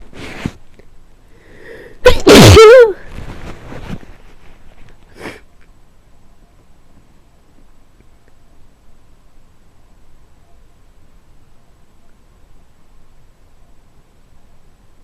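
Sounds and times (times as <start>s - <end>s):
quiet breathy sounds: 0.0s - 2.2s, 3.0s - 15.0s
person sneezing: 2.0s - 3.1s.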